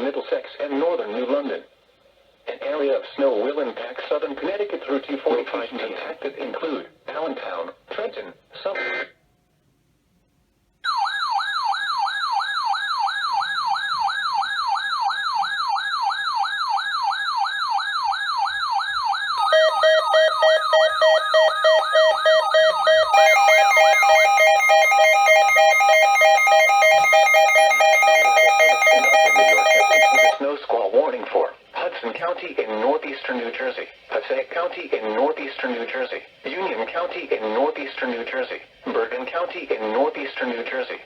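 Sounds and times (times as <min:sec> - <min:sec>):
electronic siren yelping: 0:10.9 - 0:30.4.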